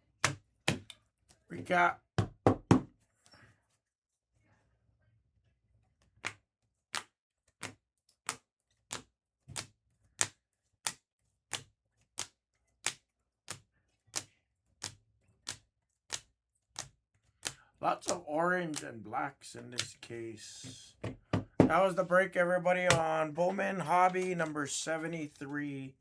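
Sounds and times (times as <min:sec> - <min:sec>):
sharp dry clicks: 0:16.8 - 0:18.9.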